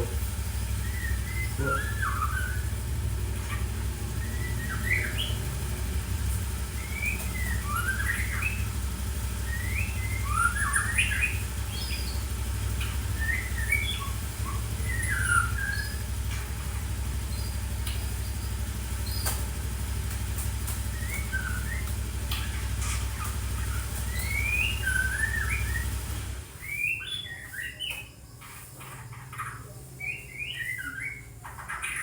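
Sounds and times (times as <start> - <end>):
steady low hum: 0.0 - 32.0
bird singing whistled phrases: 0.8 - 2.8, 4.1 - 5.5, 6.7 - 8.7, 9.4 - 12.2, 13.0 - 16.0, 20.9 - 22.6, 23.2 - 28.2, 29.4 - 32.0.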